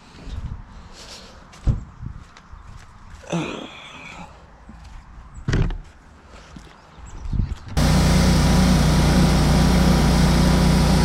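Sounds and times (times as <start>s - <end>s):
pressure washer running: 7.8s - 11.0s.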